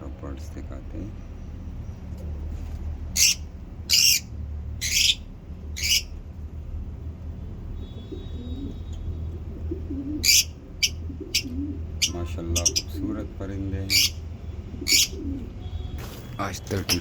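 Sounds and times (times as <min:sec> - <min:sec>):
lovebirds shrill chirps: 0:03.1 - 0:06.1, 0:10.2 - 0:13.0, 0:13.9 - 0:14.2, 0:14.8 - 0:15.3.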